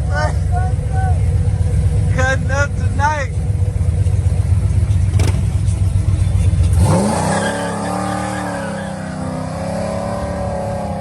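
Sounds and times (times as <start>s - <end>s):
car engine rumbling and revving: 0.0s - 11.0s.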